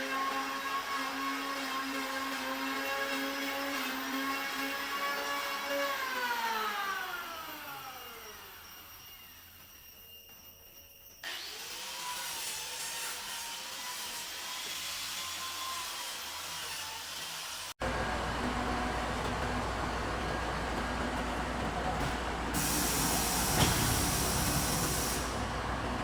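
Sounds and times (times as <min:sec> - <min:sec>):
power tool spinning down: 0:00.0 - 0:18.6, 0:22.0 - 0:26.0
power tool motor whining: 0:21.3 - 0:26.0.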